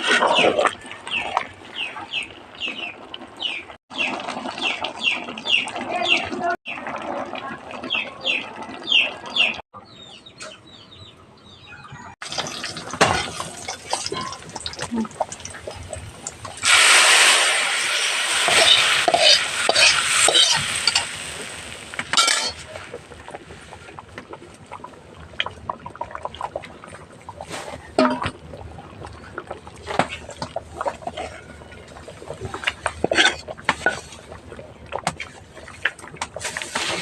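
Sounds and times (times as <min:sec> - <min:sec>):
hiss: 0:16.6 - 0:21.0
spoon scraping in a pot: 0:18.4 - 0:21.2, 0:32.4 - 0:34.2.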